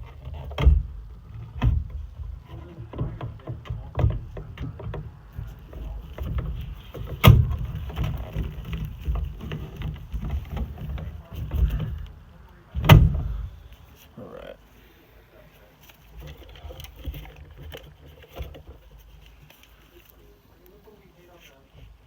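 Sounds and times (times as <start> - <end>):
hands handling metal parts: 0.0 - 14.2, 15.6 - 20.4
sharp loud knocks: 6.2 - 10.6, 12.8 - 13.6.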